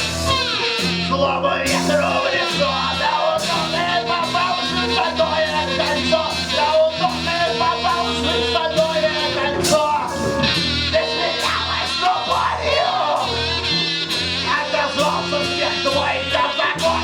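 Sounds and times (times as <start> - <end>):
bass: 0.0 - 17.0
drums: 0.0 - 17.0.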